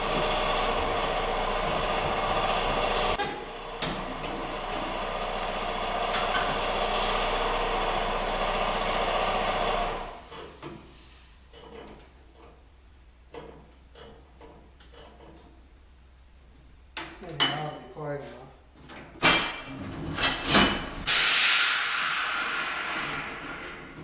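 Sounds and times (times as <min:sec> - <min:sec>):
shop machine running: 0:00.0 - 0:10.6.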